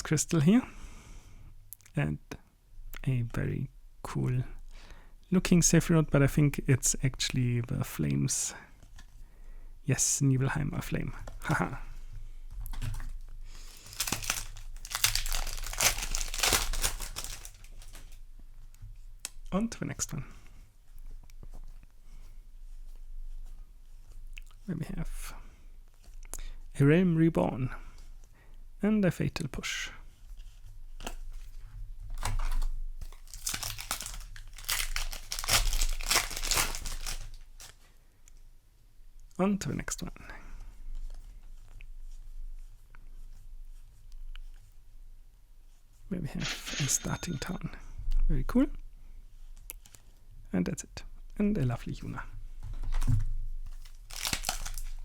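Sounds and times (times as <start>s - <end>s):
foil wrapper crinkling: 13.5s - 18.2s, 32.2s - 37.8s, 53.7s - 55.0s.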